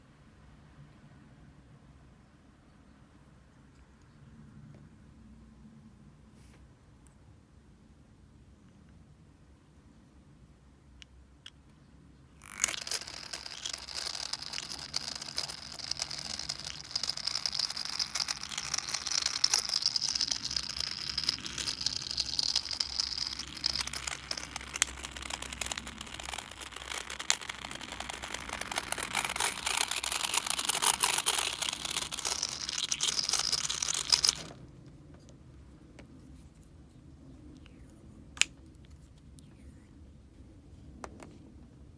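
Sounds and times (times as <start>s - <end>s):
aquarium filter crackling and rattling: 12.4s - 34.6s.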